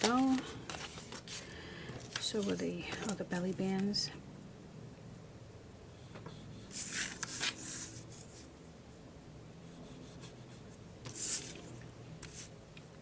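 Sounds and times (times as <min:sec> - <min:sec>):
paper rustling and sliding: 0:00.0 - 0:03.2, 0:06.7 - 0:08.5, 0:11.1 - 0:12.5.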